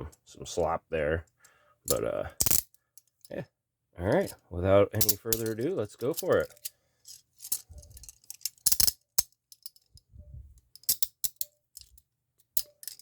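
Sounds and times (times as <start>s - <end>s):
handcuffs clicking and clinking: 1.4s - 3.4s, 5.0s - 10.0s, 10.6s - 13.0s.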